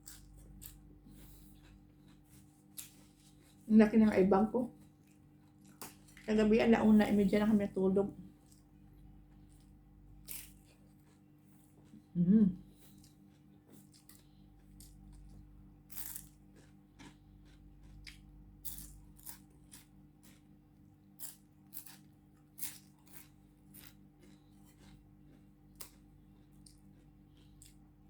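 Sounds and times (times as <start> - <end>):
crispy bread crunching: 8.3 - 12.1, 12.9 - 28.0.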